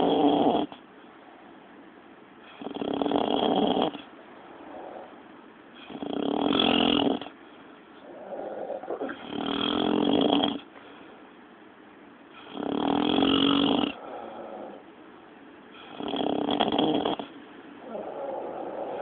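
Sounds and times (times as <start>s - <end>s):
soft breathing: 10.7s - 11.4s, 13.9s - 14.9s.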